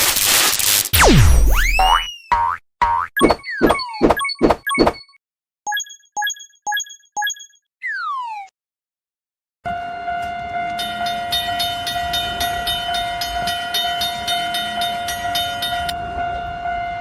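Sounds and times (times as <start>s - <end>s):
train horn: 9.6s - 17.0s.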